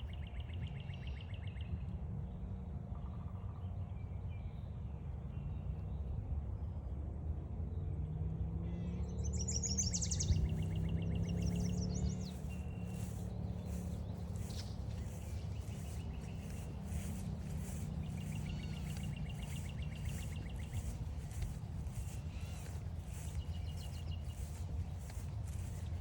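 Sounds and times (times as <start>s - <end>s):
songbirds trilling: 9.3s - 26.0s
footsteps on a trail: 9.9s - 26.0s
low rumble: 10.3s - 26.0s.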